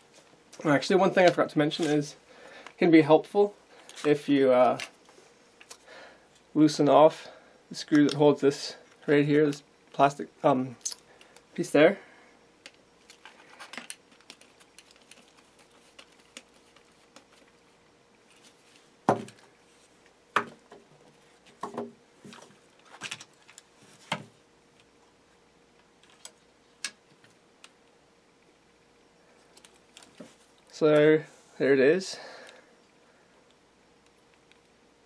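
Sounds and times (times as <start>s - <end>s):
small tools and parts clinking: 10.8s - 11.2s.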